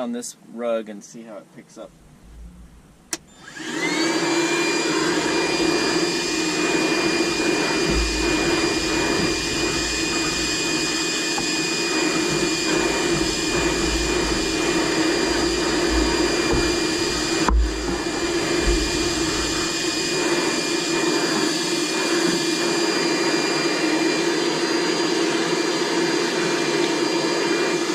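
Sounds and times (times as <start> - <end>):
nozzle thumps: 1.9 - 3.3, 5.3 - 20.4
vacuum motor high whine: 1.9 - 27.9
vacuum switch click: 3.1 - 3.3.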